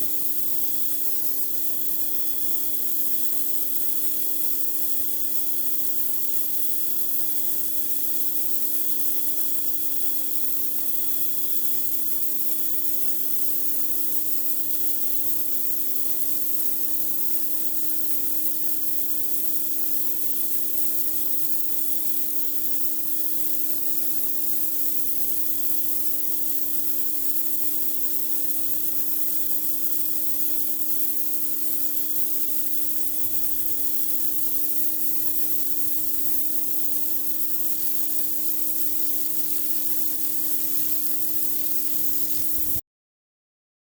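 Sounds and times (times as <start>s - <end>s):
pressure washer jet hissing: 39.5s - 42.8s.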